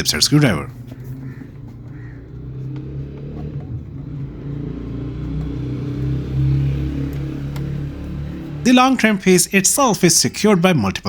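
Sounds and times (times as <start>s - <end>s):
low mechanical hum: 0.0s - 8.7s.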